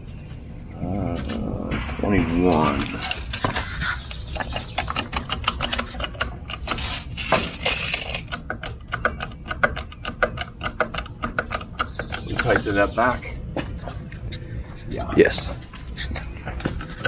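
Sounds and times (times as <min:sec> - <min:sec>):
scraping sounds: 0:00.3 - 0:08.5
ratchet mechanism clicking: 0:04.9 - 0:11.9.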